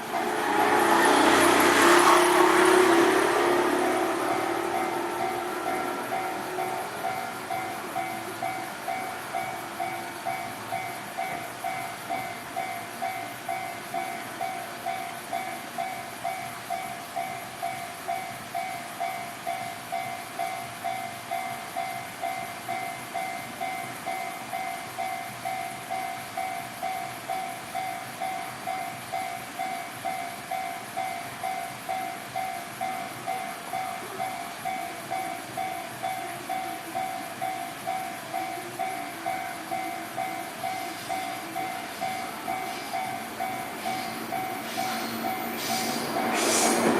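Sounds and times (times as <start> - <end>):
electronic two-tone crossing ding: 30.1 - 46.4.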